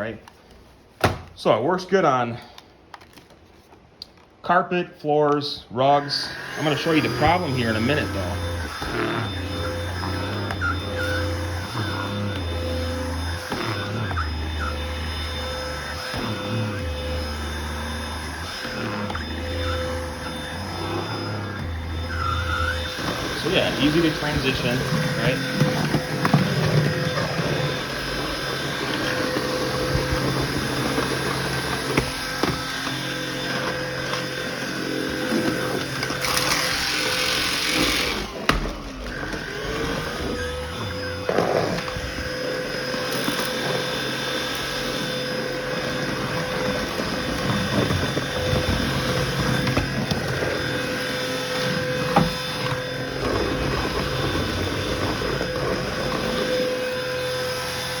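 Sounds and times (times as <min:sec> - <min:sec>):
vacuum motor whine: 0:05.8 - 0:58.0.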